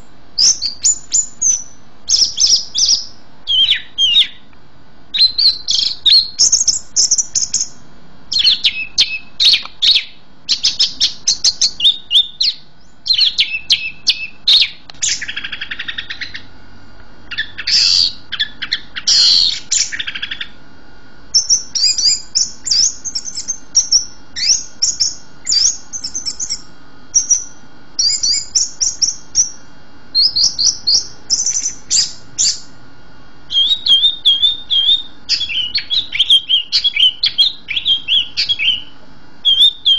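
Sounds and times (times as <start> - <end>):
songbird singing: 0.0 - 4.5, 5.1 - 16.5, 17.3 - 20.6, 21.3 - 32.8, 33.5 - 39.9.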